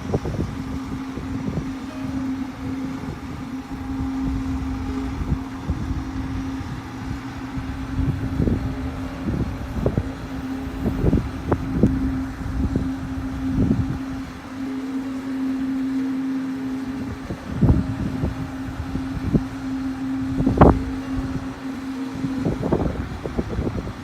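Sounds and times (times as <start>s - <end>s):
machine humming and rumbling: 0.0s - 24.0s.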